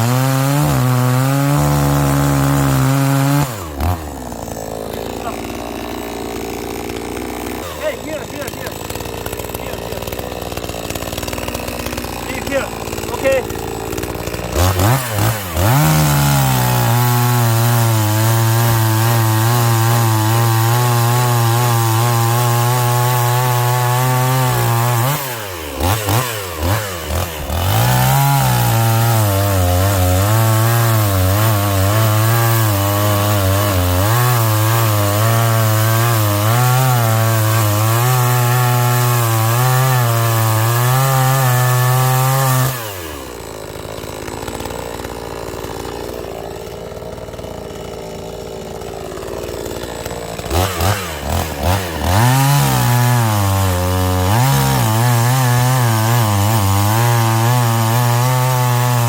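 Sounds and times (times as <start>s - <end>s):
chainsaw cutting wood: 0.0s - 59.0s.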